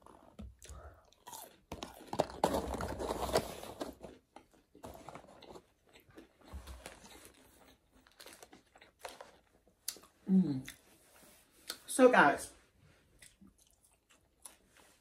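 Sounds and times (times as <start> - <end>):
person chewing food: 0.0 - 2.8, 4.1 - 10.8, 13.0 - 15.0.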